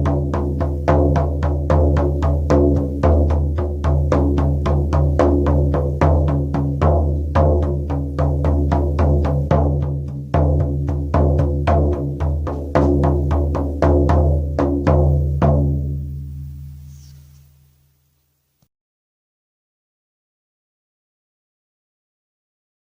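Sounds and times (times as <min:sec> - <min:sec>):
frame drum beating: 0:00.0 - 0:16.9.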